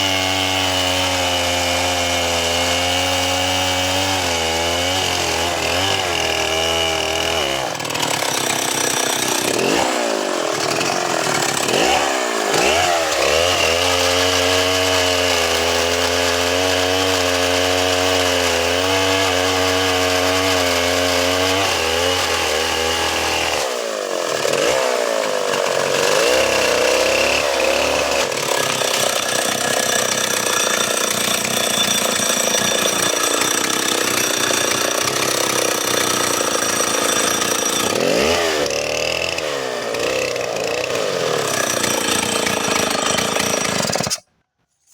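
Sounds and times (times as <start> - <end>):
chainsaw cutting wood: 0.0 - 44.3.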